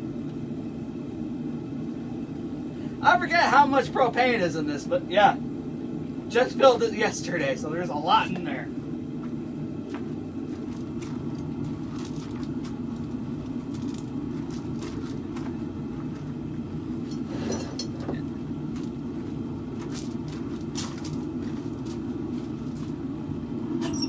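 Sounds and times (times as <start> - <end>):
propane forge burner running: 0.0 - 24.0.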